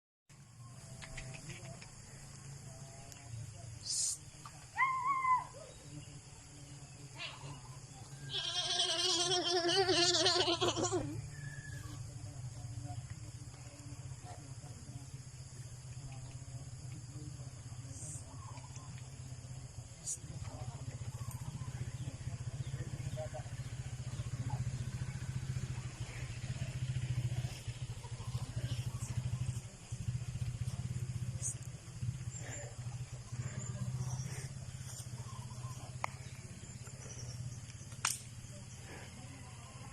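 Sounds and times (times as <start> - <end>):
small engine puttering: 7.8 - 39.9
goats bleating: 8.2 - 11.2.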